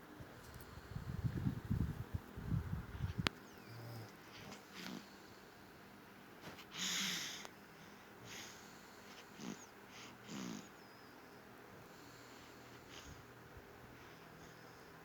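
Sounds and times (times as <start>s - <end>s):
child snoring: 3.7s - 5.2s, 6.8s - 7.5s, 8.2s - 10.9s.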